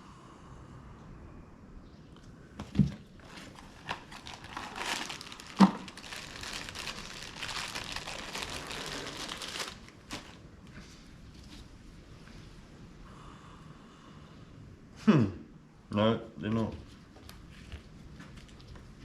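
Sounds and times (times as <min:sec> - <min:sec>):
packaging crinkling and rustling: 0:03.2 - 0:10.4.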